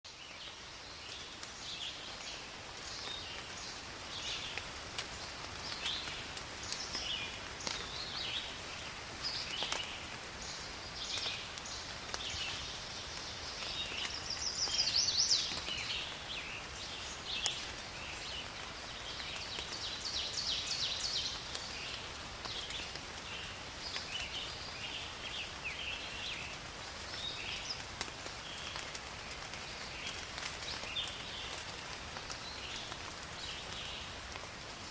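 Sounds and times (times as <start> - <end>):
birds chirping and singing: 9.2 - 18.4.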